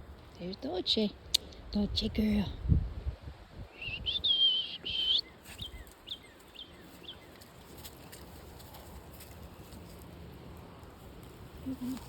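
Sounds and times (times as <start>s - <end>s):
songbird whistling and chirping: 3.7s - 7.3s.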